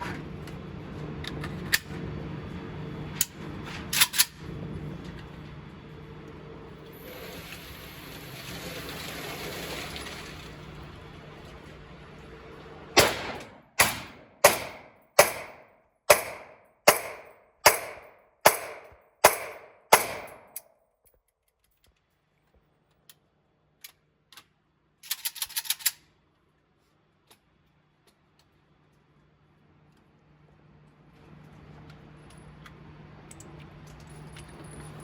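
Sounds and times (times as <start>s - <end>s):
gunshots with ringing tail: 13.0s - 20.5s.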